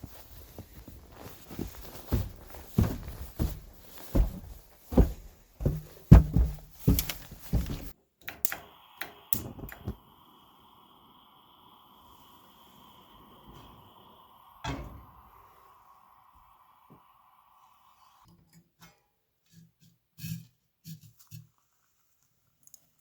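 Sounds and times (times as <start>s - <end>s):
heavy footsteps: 0.0s - 8.0s
faint steady whine: 0.0s - 18.3s.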